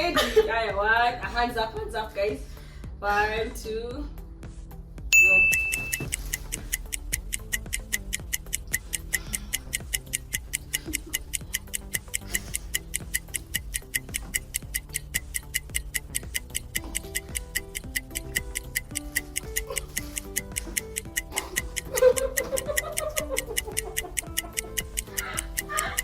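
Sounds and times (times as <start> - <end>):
background music with low notes: 0.0 - 26.0
fast timer ticking: 5.1 - 26.0
short high beep: 5.2 - 6.1.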